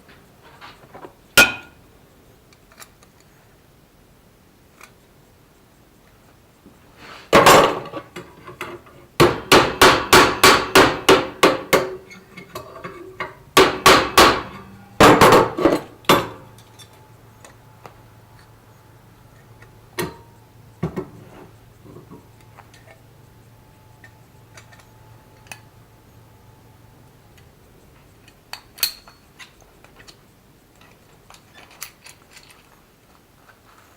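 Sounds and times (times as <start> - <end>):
hammer striking steel: 1.4 - 1.8, 9.2 - 16.8.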